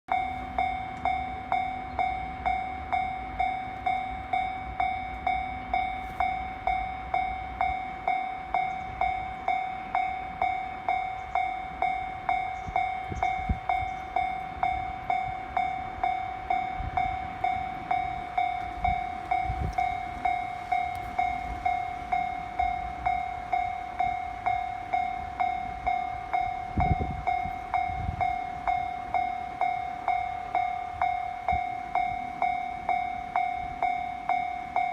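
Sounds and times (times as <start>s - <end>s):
level-crossing warning bell: 0.1s - 34.9s.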